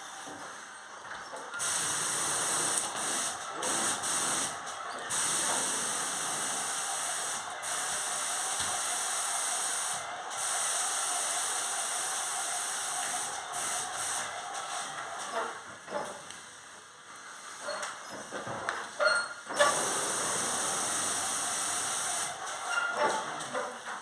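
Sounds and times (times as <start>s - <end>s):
spray gun hissing: 1.6s - 15.2s, 19.6s - 22.7s.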